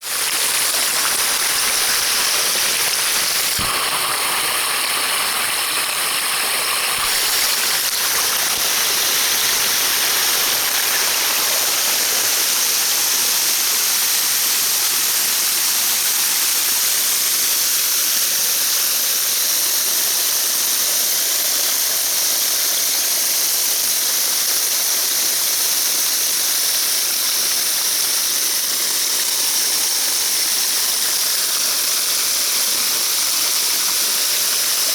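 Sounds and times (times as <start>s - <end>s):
shower water spraying: 0.0s - 15.1s.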